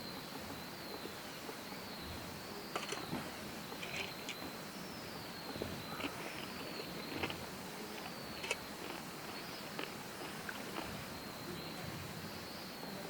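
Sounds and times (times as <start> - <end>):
faint outdoor background: 0.0 - 13.0
sharp clicks and crackles: 6.0 - 10.9.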